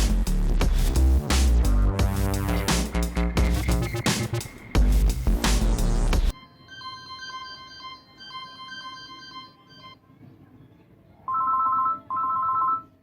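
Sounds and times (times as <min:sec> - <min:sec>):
phone ringtone melody of beeps: 0:06.4 - 0:10.0, 0:11.3 - 0:13.0.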